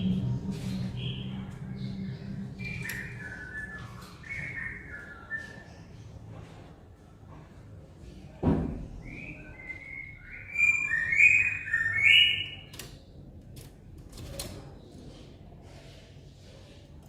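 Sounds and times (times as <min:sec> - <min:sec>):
songbird whistling: 0:02.5 - 0:06.0, 0:09.0 - 0:12.7.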